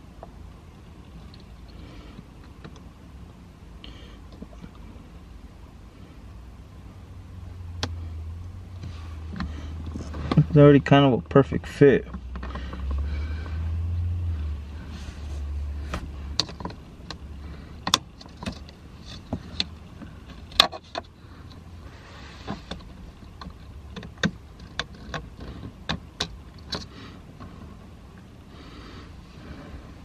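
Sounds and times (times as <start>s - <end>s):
low rumble: 12.0s - 17.8s.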